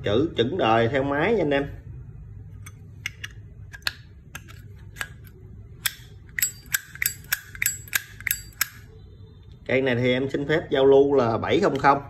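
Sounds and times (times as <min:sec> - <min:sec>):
ringing metallic clinks: 0:06.4 - 0:08.9.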